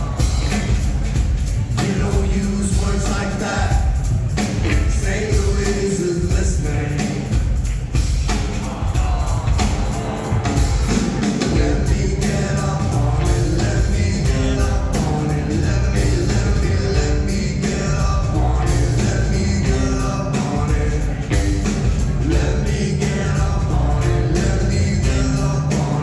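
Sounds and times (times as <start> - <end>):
deep bass line: 0.0 - 26.0
rock band playing live: 0.0 - 26.0
steady drum beat: 0.0 - 26.0
person singing: 1.7 - 4.0, 8.4 - 26.0.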